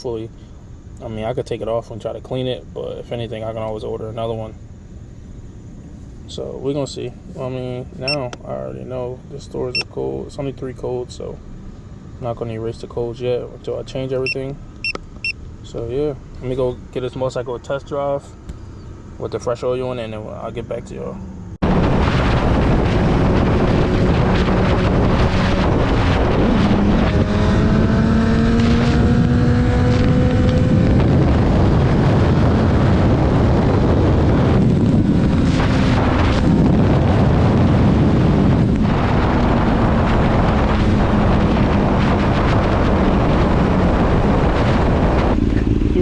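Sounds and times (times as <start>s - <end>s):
wind noise on microphone: 21.5s - 46.0s
motorcycle engine running: 38.3s - 46.0s.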